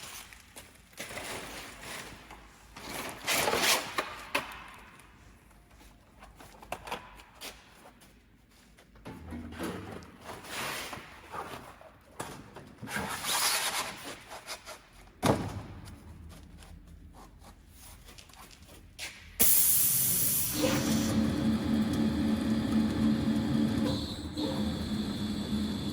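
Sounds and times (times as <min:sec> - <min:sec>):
machine hiss and hum: 0:19.4 - 0:25.9.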